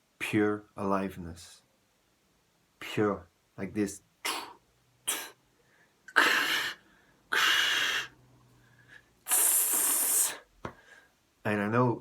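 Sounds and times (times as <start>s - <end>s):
man breathing heavily: 4.4s - 11.2s.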